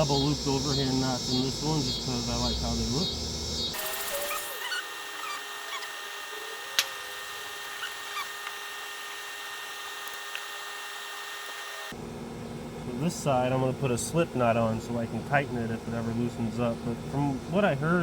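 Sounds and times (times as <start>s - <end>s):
steady hum: 0.0s - 18.0s
cord squeaking: 3.8s - 8.7s.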